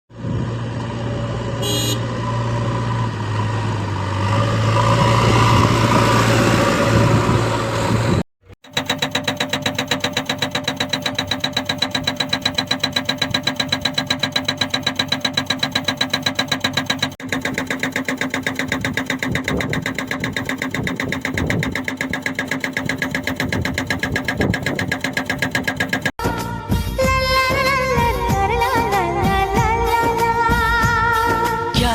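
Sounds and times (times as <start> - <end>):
hydraulic breaker hammering: 8.5 - 26.2
machine engine: 8.6 - 26.2.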